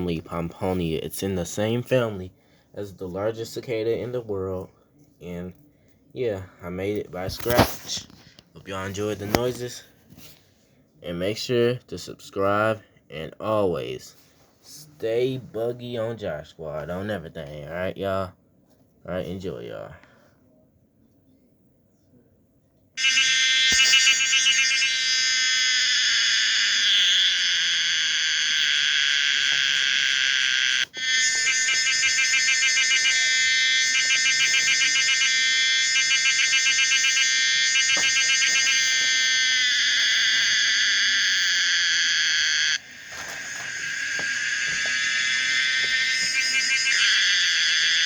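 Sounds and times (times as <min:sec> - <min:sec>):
high-pitched cicada drone: 0:23.0 - 0:48.0.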